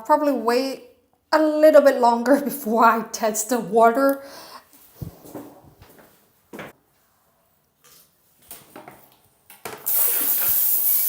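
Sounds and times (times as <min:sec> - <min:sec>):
bidet sprayer spraying water: 0:09.9 - 0:11.0.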